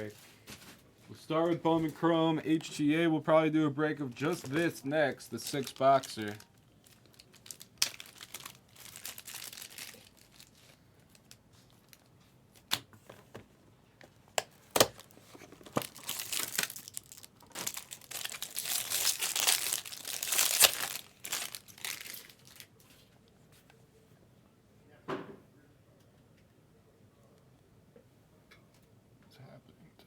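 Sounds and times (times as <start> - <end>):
plastic wrapping crinkling and tearing: 4.1 - 12.8, 14.4 - 23.0.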